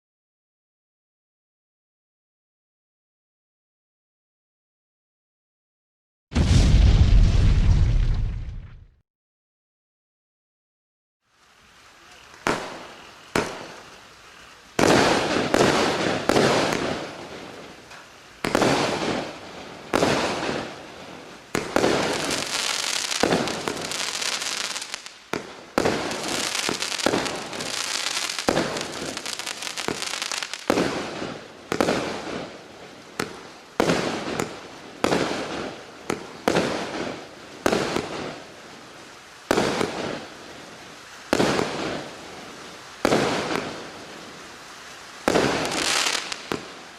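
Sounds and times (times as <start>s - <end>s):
dense fireworks crackling: 6.3s - 9.0s, 11.3s - 46.9s
fireworks bangs: 6.3s - 9.0s, 12.0s - 38.4s, 39.5s - 44.4s, 45.2s - 46.9s.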